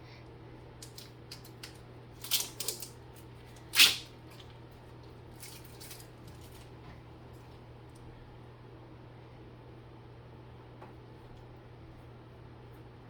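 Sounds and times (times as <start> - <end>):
steady low hum: 0.0 - 13.0
food scraping and rustling: 0.8 - 6.9.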